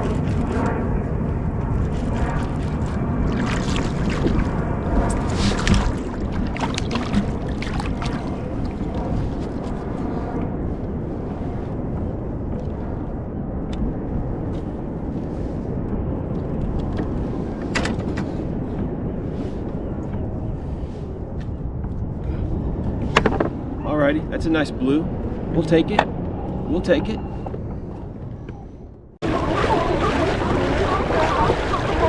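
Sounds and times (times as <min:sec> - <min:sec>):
sea water moving around kayak: 0:00.0 - 0:00.8, 0:01.6 - 0:13.0, 0:29.2 - 0:32.0
wind noise on microphone: 0:00.0 - 0:32.0.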